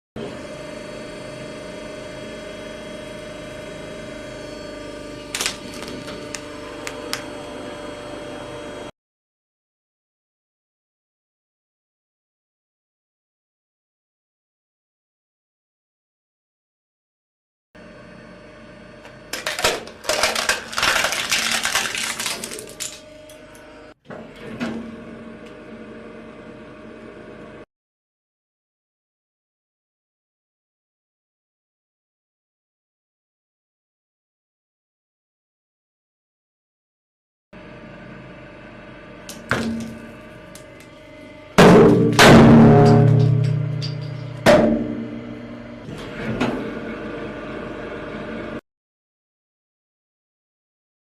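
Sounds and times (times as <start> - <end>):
hydraulic press humming: 0.2 - 8.9, 37.6 - 48.6
object crunching: 5.3 - 6.4, 19.4 - 23.0
hydraulic press crackling and snapping: 5.3 - 7.2, 19.1 - 23.5, 39.3 - 41.0
loud crack: 19.4 - 23.0.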